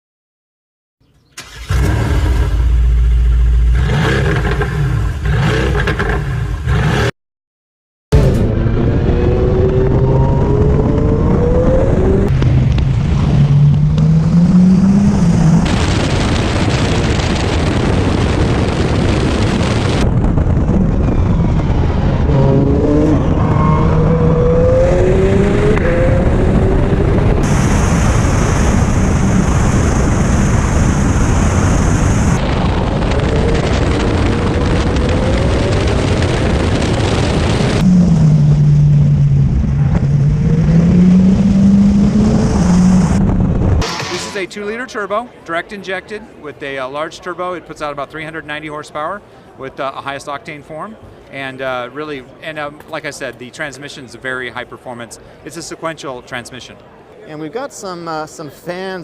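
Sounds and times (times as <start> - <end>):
car engine revving: 1.4 - 7.1, 8.1 - 20.1, 21.0 - 44.4.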